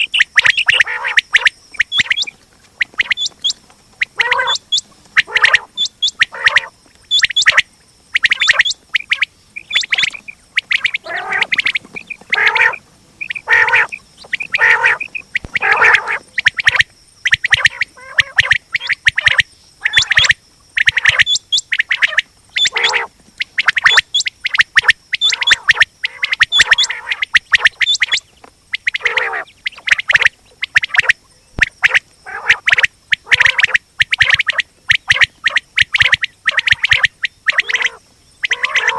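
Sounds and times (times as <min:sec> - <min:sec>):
quail calling: 0:00.0 - 0:38.9.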